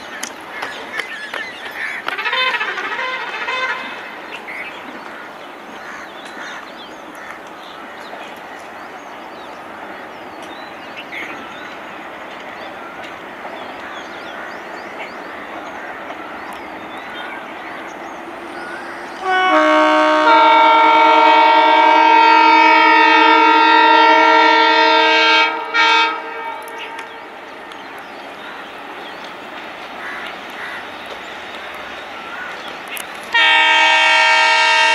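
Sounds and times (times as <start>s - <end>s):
train rumbling past: 0.0s - 34.9s
locomotive horn blasts: 2.1s - 4.1s, 19.2s - 27.4s, 33.3s - 34.9s.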